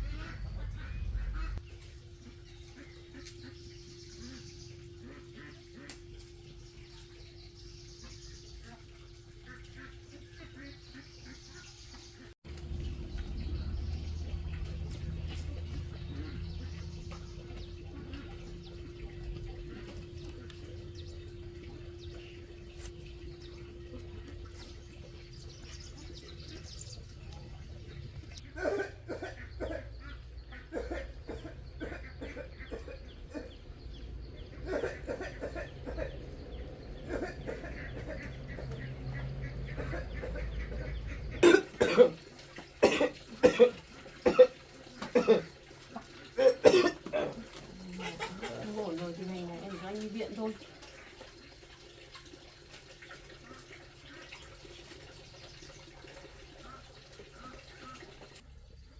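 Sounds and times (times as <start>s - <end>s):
chickens clucking: 0.0s - 7.3s, 7.9s - 58.4s
low steady hum: 0.0s - 55.8s
man coughing: 28.5s - 30.0s, 41.4s - 42.2s, 42.8s - 45.5s, 46.4s - 47.4s.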